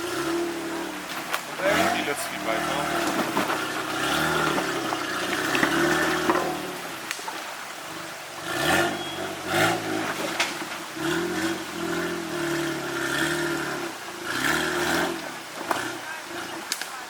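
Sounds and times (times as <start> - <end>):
off-road vehicle engine revving: 0.0 - 17.0.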